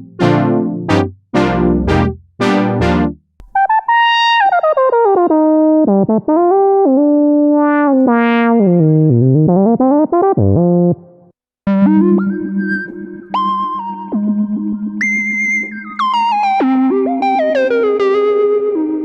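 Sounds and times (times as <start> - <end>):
synthesizer chord stab: 0.0 - 3.2
sliding synth lead line: 0.0 - 3.6.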